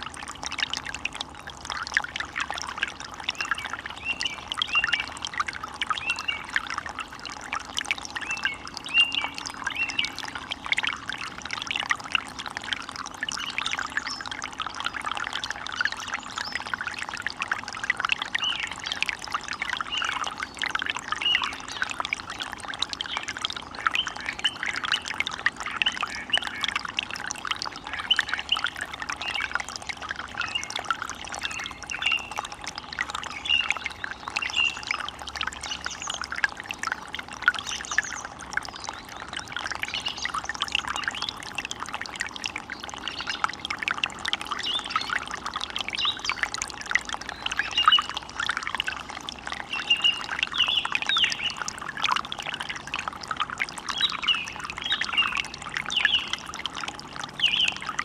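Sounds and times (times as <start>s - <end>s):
water splashing and trickling: 0.0s - 58.0s.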